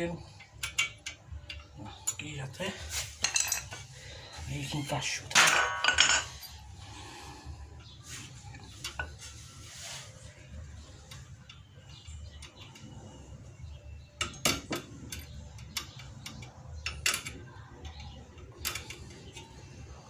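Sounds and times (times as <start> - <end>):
metal brake parts clinking: 0.4 - 4.2, 5.1 - 6.8.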